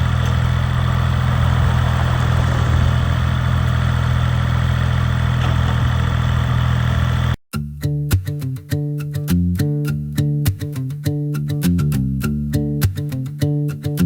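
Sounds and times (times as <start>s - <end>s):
small diesel engine running: 0.0s - 7.4s.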